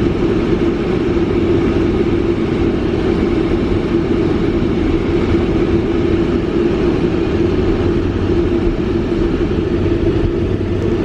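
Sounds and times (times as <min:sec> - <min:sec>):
vehicle engine droning: 0:00.0 - 0:11.0.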